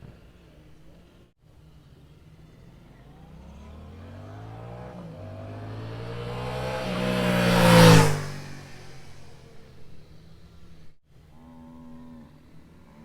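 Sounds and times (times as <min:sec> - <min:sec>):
motorcycle passing by: 0:01.9 - 0:11.0.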